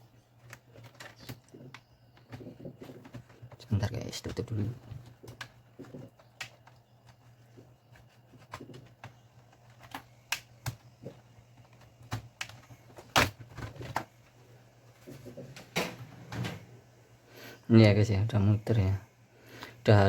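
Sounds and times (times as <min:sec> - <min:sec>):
faint low hum: 0:00.0 - 0:20.0
laptop plastic case clicking: 0:04.2 - 0:14.1.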